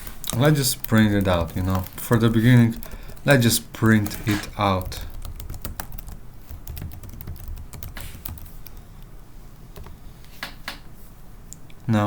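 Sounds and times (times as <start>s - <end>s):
computer keyboard typing: 0.0s - 9.2s, 9.8s - 10.0s.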